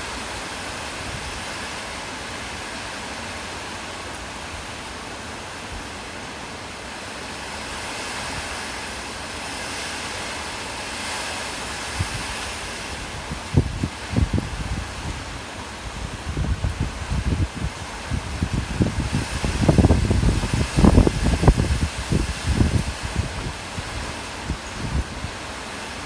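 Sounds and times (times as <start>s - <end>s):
wind gusts thumping on microphone: 7.4s - 26.0s
strong wind rushing: 11.8s - 26.0s.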